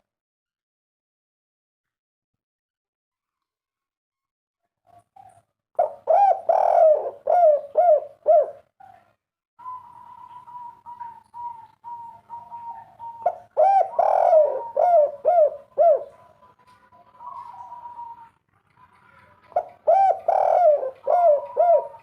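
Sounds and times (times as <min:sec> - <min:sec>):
dove cooing: 0:05.8 - 0:09.0, 0:09.6 - 0:22.0.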